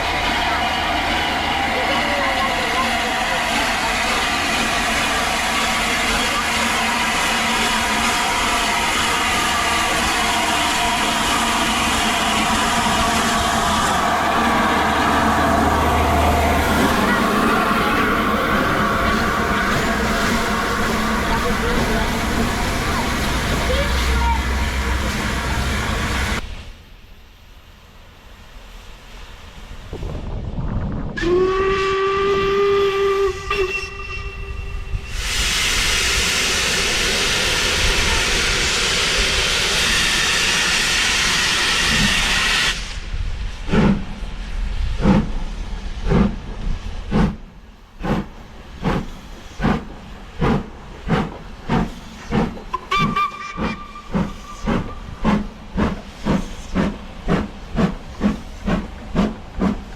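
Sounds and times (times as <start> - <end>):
steam locomotive whistle: 0.0 - 23.0, 31.2 - 36.8, 52.7 - 55.2
steam hissing: 0.0 - 26.6, 31.2 - 59.9
locomotive exhaust beats: 43.7 - 59.9.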